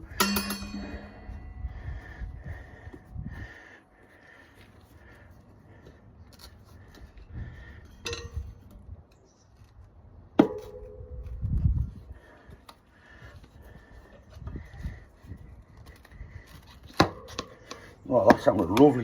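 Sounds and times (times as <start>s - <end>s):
sharp ringing metallic strike: 0.0s - 3.7s
tyre tools clicking on rim: 16.5s - 19.0s.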